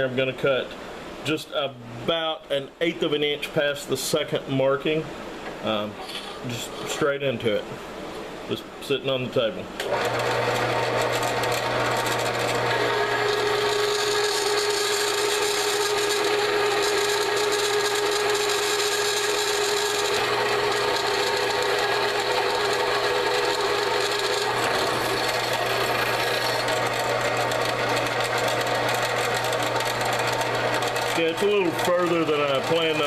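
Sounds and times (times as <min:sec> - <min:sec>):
bandsaw cutting steel pipe: 0:09.8 - 0:33.0.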